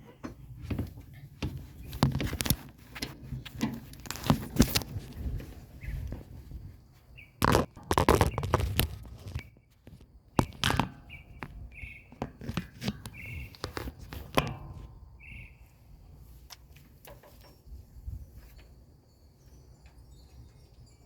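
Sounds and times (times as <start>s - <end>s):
bird chirping: 7.1s - 13.8s, 15.1s - 15.9s, 17.3s - 21.0s.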